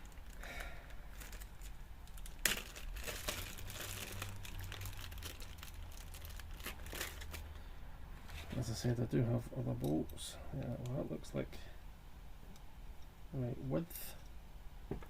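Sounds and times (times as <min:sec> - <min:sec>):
packaging rustling: 0:00.0 - 0:07.5.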